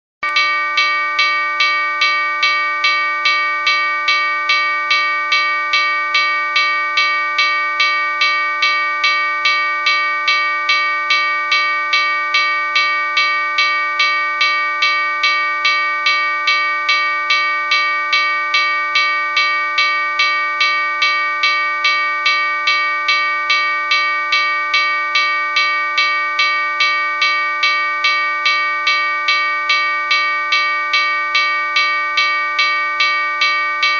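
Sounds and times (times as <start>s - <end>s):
locomotive bell ringing: 0.2s - 33.9s.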